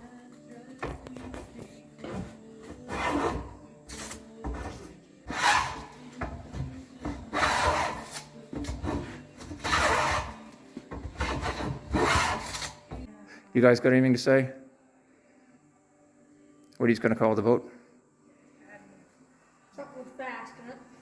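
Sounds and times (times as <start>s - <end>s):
hand tool scraping wood: 1.1s - 13.1s.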